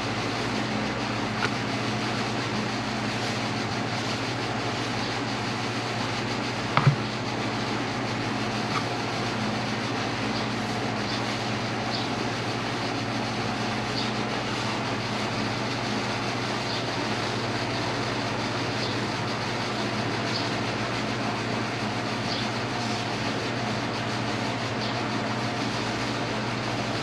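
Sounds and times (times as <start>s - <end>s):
steady mechanical hum: 0.0s - 27.0s
sharp knocks: 6.8s - 7.1s.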